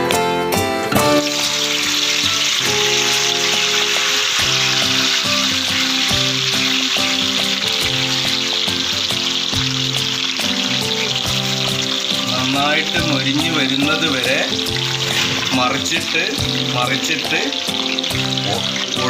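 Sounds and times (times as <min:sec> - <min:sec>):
chicken sizzling in hot oil: 0:01.0 - 0:19.0.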